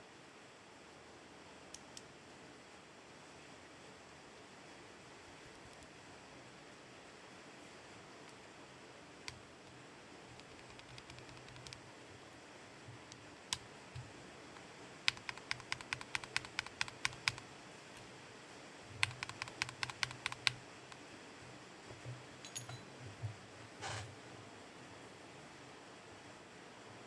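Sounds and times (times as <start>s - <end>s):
mechanical keyboard typing: 10.3s - 11.8s, 15.0s - 18.1s, 19.0s - 21.0s.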